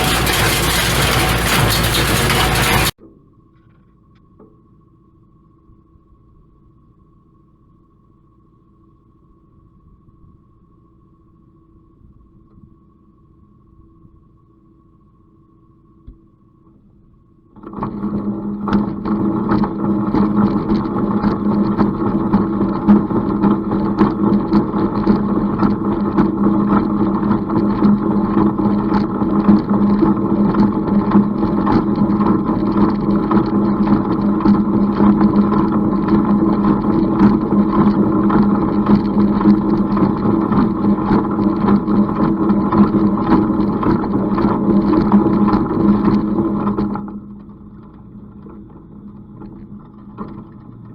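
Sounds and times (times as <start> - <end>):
engine running steadily: 0.0 - 2.9.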